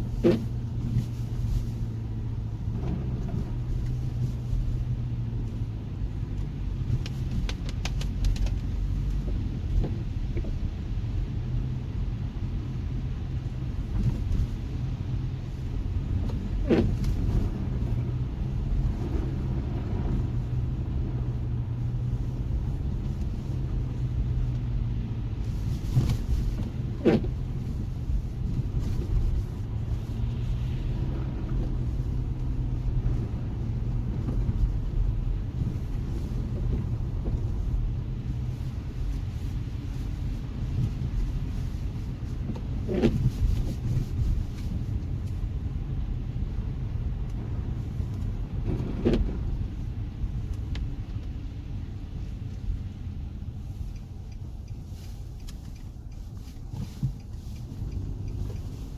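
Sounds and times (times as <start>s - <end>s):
street ambience rumble: 0.0s - 58.9s.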